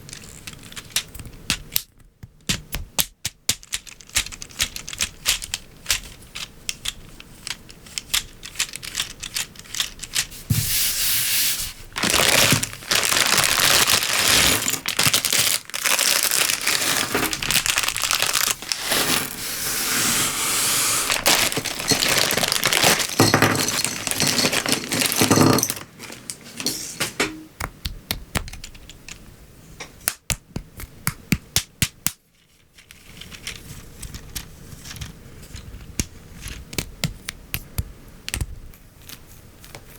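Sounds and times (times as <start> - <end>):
plastic parts clicking together: 0.0 - 10.4, 27.5 - 39.9
plastic crinkling and rustling: 11.7 - 27.2, 32.3 - 37.0.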